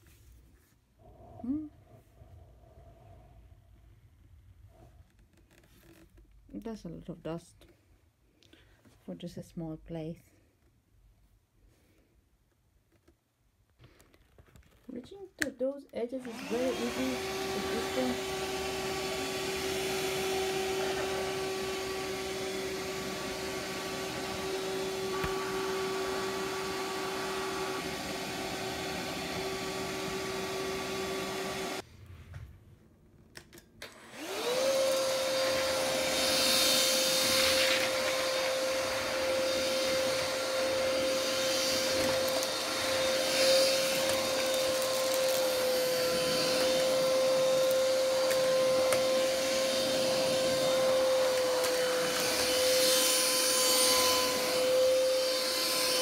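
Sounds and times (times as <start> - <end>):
stick vacuum motor whine: 16.2 - 31.8, 33.8 - 56.0.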